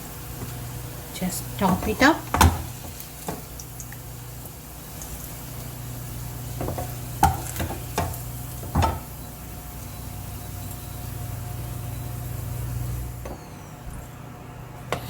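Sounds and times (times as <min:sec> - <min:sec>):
hot oil sizzling: 0:00.0 - 0:13.8.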